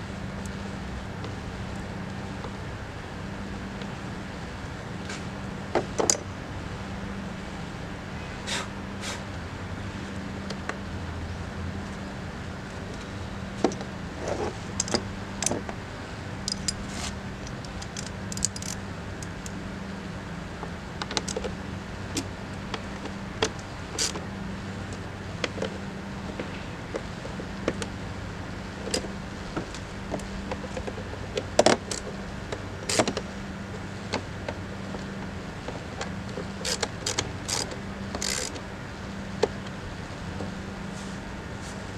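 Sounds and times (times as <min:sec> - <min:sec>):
steady low hum: 0:00.0 - 0:41.9
hands handling car parts: 0:16.5 - 0:19.6.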